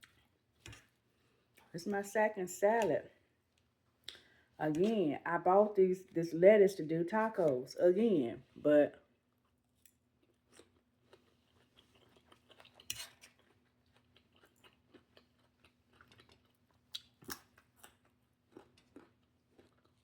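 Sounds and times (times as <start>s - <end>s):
person chewing salad: 0.0s - 1.7s, 9.4s - 20.0s.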